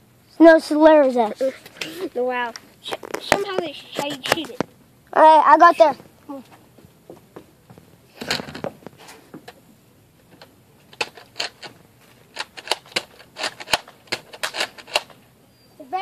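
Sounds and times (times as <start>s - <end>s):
sharp clicks and taps: 2.5s - 4.7s
handling clatter: 10.3s - 15.2s.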